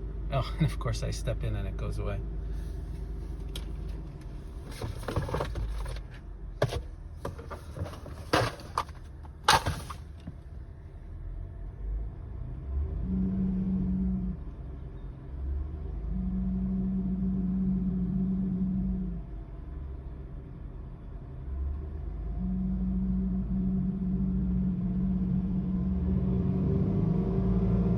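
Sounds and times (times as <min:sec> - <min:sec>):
car engine idling: 0:00.0 - 0:11.8.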